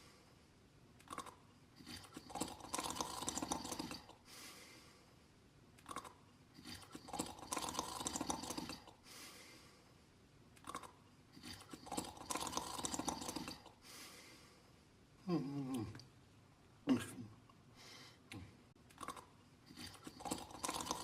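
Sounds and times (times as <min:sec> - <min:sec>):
crackly snoring inhalations: 0:00.0 - 0:00.4, 0:01.1 - 0:05.2, 0:05.9 - 0:10.0, 0:10.7 - 0:14.8, 0:19.0 - 0:21.0
soft breaths: 0:00.0 - 0:00.7, 0:01.7 - 0:10.3, 0:11.2 - 0:16.0, 0:17.1 - 0:18.8.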